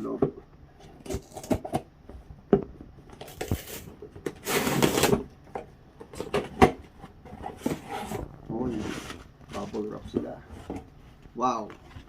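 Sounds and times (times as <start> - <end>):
cardboard tearing: 3.2 - 5.2.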